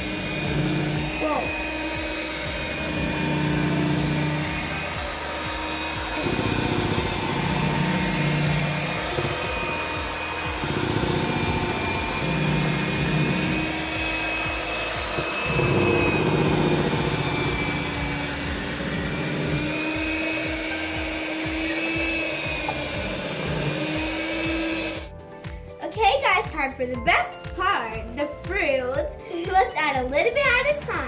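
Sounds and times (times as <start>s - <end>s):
electric mixer motor whine: 0.0s - 25.7s.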